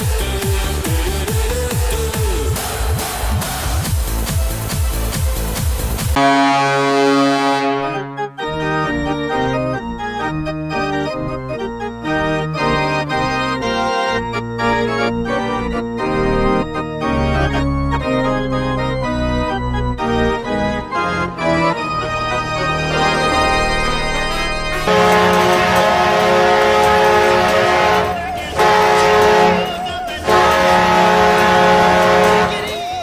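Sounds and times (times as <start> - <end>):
goal horn: 6.2 - 8.5, 24.4 - 32.9
organ playing quick notes: 6.2 - 33.0.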